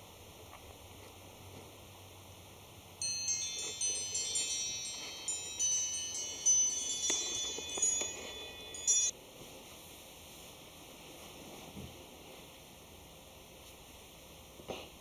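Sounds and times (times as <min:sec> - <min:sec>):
high metallic chimes: 0:03.0 - 0:09.1.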